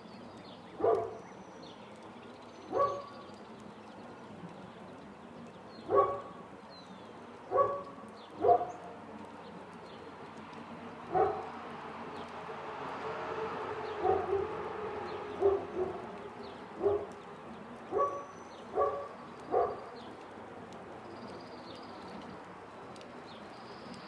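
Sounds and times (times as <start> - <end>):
city background: 0.0 - 24.0
soft rain hiss: 0.0 - 24.0
dog barking: 0.8 - 1.2, 2.7 - 3.1, 5.9 - 6.3, 7.5 - 8.8, 11.1 - 11.5, 14.0 - 14.6, 15.4 - 16.1, 16.8 - 17.2, 17.9 - 19.9.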